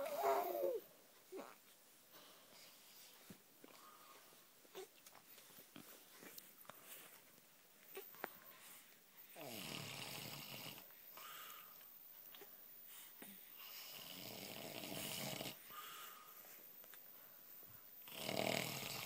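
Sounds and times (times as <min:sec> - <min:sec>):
man snoring: 0:09.4 - 0:10.8, 0:13.8 - 0:15.6, 0:18.1 - 0:19.0
out-breath: 0:11.2 - 0:11.9, 0:15.7 - 0:16.5.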